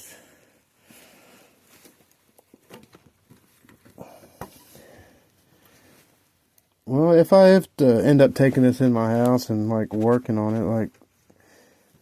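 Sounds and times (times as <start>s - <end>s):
clicks and rustling of wiring: 1.7s - 4.8s, 8.4s - 11.4s.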